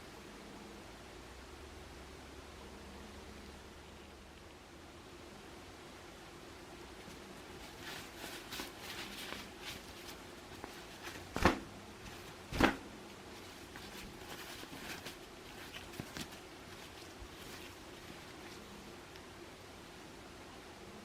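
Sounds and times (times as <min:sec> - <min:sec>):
rustling and handling small objects: 0:06.9 - 0:19.3.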